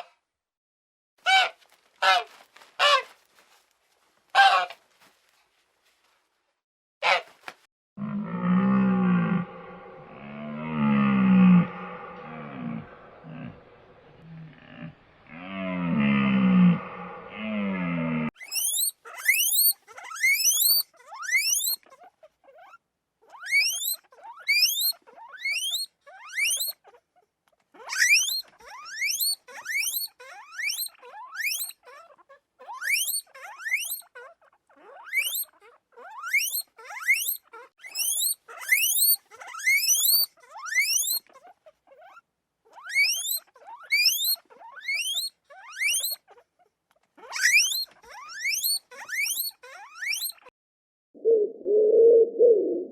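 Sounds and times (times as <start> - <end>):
animal whistled chirps: 18.4 - 21.8, 36.3 - 41.2.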